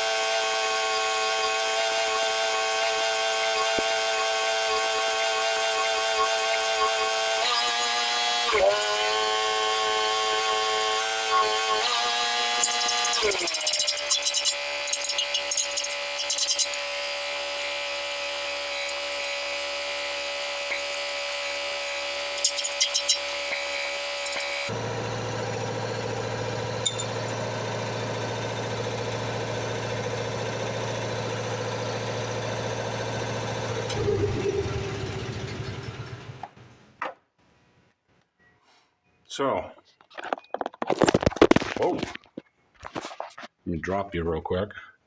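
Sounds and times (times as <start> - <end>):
welding arc crackling and buzzing: 11.8 - 25.3.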